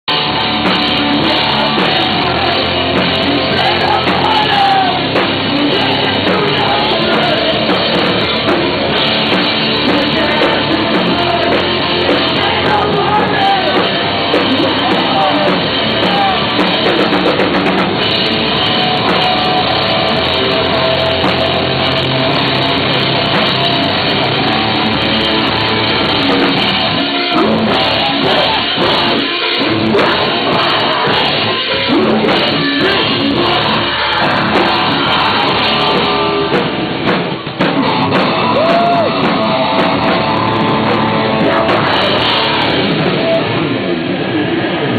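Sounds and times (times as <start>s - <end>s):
person singing: 0.0s - 17.4s, 26.0s - 36.8s, 37.6s - 43.8s
rock band playing: 0.0s - 44.9s.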